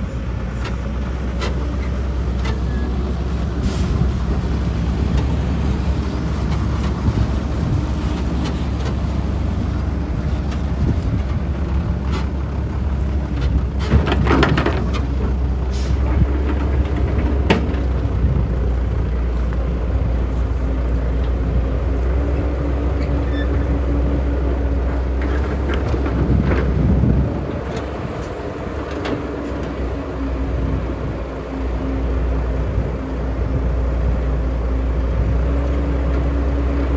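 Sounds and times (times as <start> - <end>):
diesel machinery engine rumble: 0.0 - 36.9
scraping and clanking: 13.4 - 18.1.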